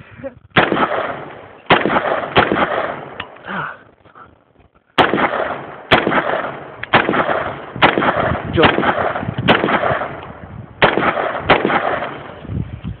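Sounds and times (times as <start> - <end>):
rifle shots with echo: 0.6 - 3.4, 5.0 - 12.4.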